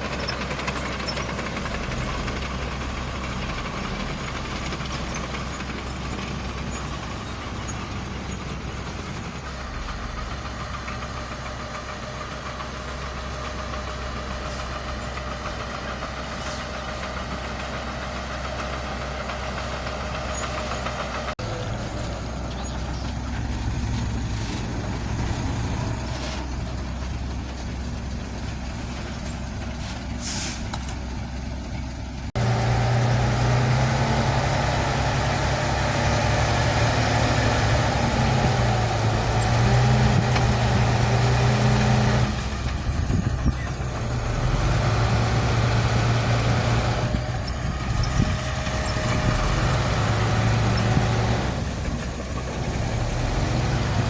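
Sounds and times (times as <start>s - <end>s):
heavy diesel engines running: 0.0s - 54.0s
short hiss: 30.2s - 30.8s.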